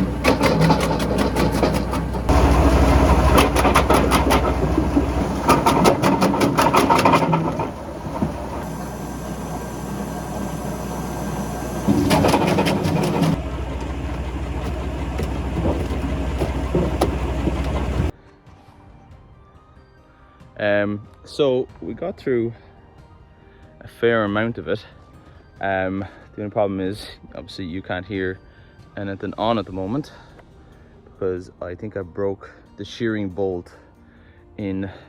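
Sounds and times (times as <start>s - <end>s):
tractor engine hum: 0.0s - 18.1s
wood chipper cracking branches: 0.0s - 18.1s.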